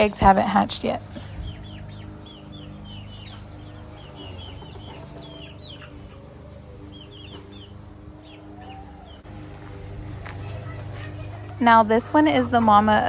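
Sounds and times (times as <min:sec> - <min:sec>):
baby chicks peeping: 0:00.0 - 0:13.0
steady low hum: 0:00.0 - 0:13.0
hen clucking: 0:01.0 - 0:09.2.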